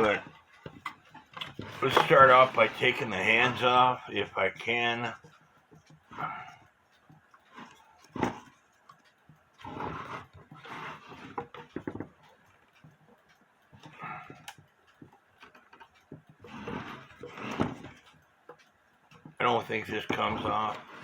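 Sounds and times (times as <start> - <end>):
scraping on alarm clock: 0.0 - 21.0.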